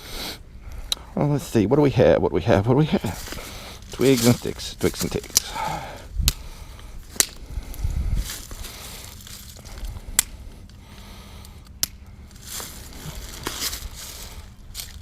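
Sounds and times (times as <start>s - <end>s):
dry twigs snapping and crunching: 3.0s - 15.0s.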